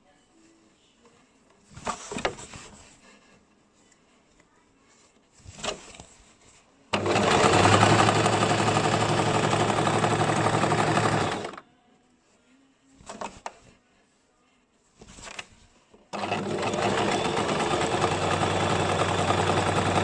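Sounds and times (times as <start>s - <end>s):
sewing machine stitching: 6.9s - 11.6s, 16.1s - 20.0s.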